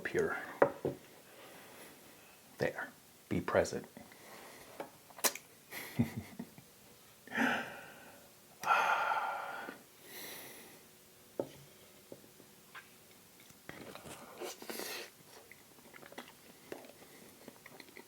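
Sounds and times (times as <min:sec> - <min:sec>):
person breathing: 0:07.3 - 0:10.9.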